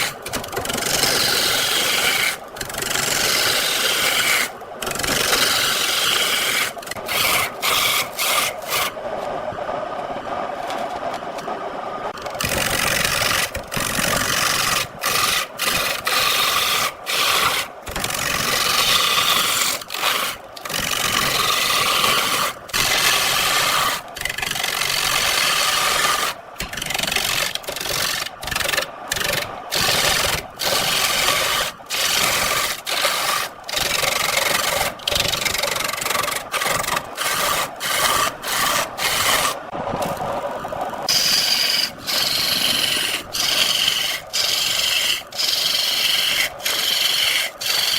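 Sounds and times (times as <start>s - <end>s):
lathe tool scraping wood: 0.0s - 9.4s, 12.2s - 39.7s, 41.0s - 47.9s.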